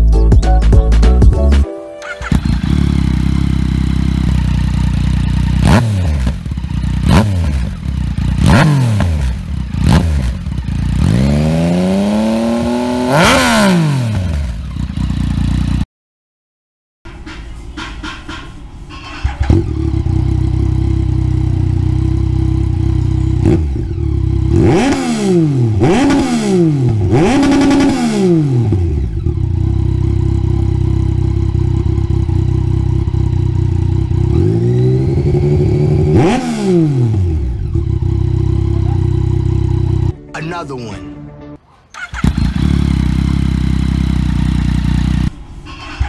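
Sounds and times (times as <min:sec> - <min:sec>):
motorcycle engine idling: 0:02.0 - 0:12.4, 0:14.1 - 0:15.8, 0:18.9 - 0:24.9, 0:28.6 - 0:36.3, 0:37.2 - 0:40.1, 0:42.0 - 0:46.0
motorcycle engine revving: 0:02.0 - 0:15.8, 0:18.9 - 0:40.1, 0:41.9 - 0:46.0.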